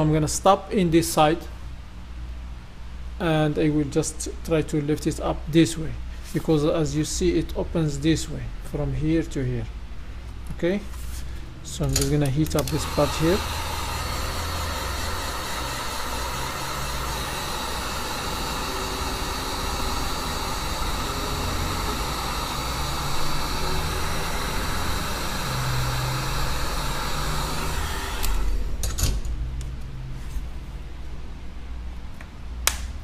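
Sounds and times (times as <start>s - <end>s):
sharp clicks: 11.9s - 12.8s
heat gun blowing hot air: 12.6s - 28.8s.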